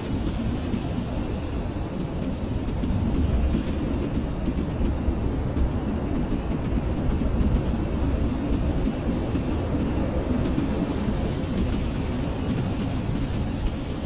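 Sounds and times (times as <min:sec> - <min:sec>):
blizzard wind rushing: 0:00.0 - 0:14.0.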